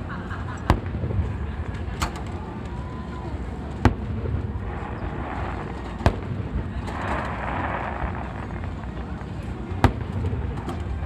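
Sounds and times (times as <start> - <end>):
fireworks hissing rush: 3.8 - 10.5
fireworks bangs: 3.8 - 11.0.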